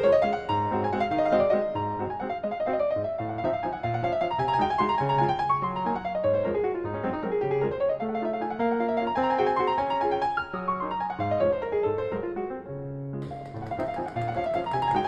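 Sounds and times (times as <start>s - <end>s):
piano music: 13.2s - 15.0s.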